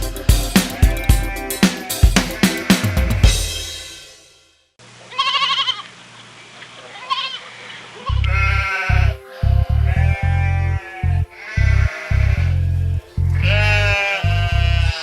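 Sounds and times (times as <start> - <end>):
music with heavy bass beat: 0.0 - 4.5
sheep bleating: 5.1 - 5.9, 6.9 - 12.7, 13.3 - 15.0.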